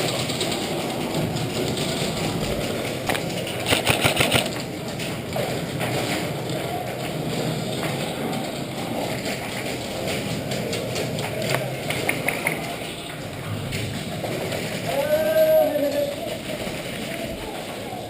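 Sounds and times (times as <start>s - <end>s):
steady background noise: 0.0s - 18.0s
airsoft gun shots: 3.6s - 4.5s.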